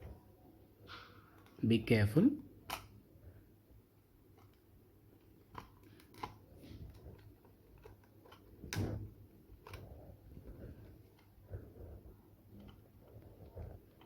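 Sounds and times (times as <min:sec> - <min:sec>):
plastic clicks and knocks: 0:05.3 - 0:11.4.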